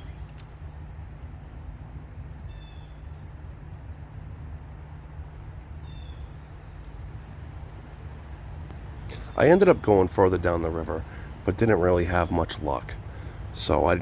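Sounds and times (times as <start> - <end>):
bird chirping: 0.0 - 3.4, 5.8 - 7.6, 8.7 - 14.0
low outdoor rumble: 0.0 - 14.0.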